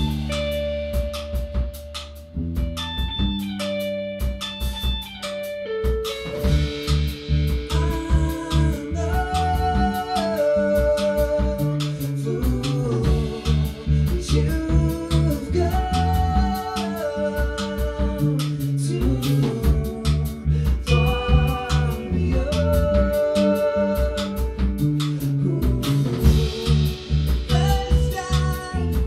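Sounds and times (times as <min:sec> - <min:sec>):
cymbal and hi-hat hits: 0:00.0 - 0:16.9, 0:24.2 - 0:29.0
rock band playing live: 0:00.0 - 0:29.0.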